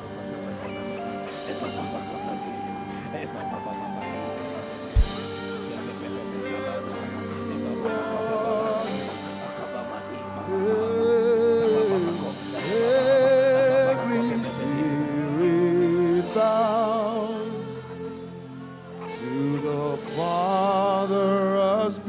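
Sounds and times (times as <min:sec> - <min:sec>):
person singing with vibrato: 0:00.0 - 0:22.0
sustained instrumental backing: 0:00.0 - 0:22.0.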